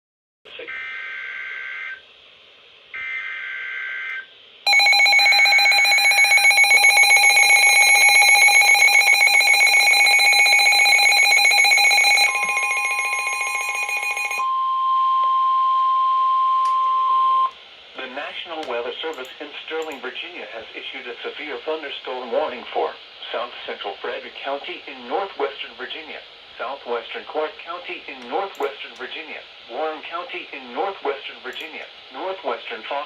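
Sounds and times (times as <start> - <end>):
harsh pulsing attention tone: 4.7 - 14.7.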